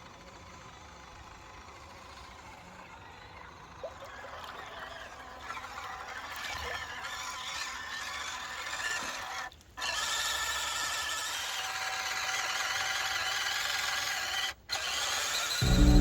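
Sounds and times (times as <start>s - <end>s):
small electric motor whining: 4.6s - 16.0s.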